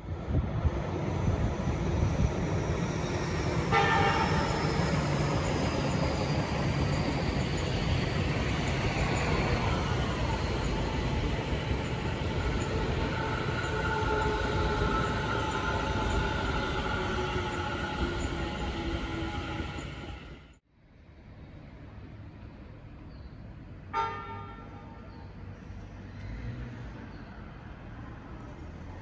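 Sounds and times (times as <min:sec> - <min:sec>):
electric train running: 0:00.8 - 0:20.6
train horn toot: 0:03.6 - 0:05.2, 0:23.9 - 0:25.0.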